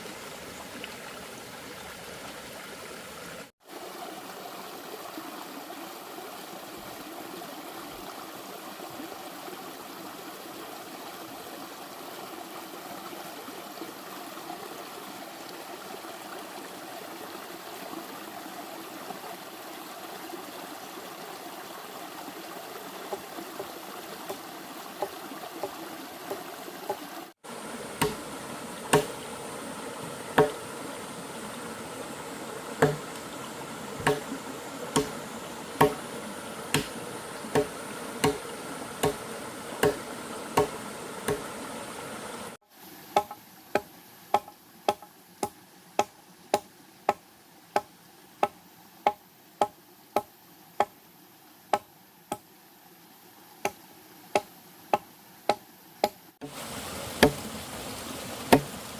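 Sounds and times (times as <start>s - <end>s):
hand tool striking wood: 28.0s - 28.2s, 28.9s - 29.2s, 30.4s - 30.6s, 32.8s - 33.2s, 34.0s - 35.2s, 35.8s - 36.1s, 36.7s - 41.5s, 43.2s - 47.2s, 54.4s - 56.2s, 57.2s - 57.4s, 58.5s - 58.7s.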